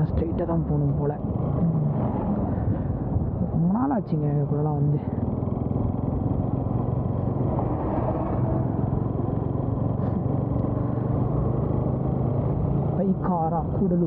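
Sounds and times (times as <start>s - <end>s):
wind noise on microphone: 0.0s - 4.0s
motorcycle engine running: 4.6s - 14.0s.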